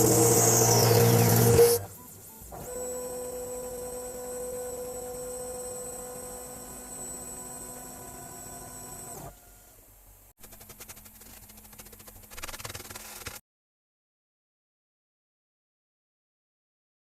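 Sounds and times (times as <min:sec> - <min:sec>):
electrical hum: 0:00.0 - 0:13.0.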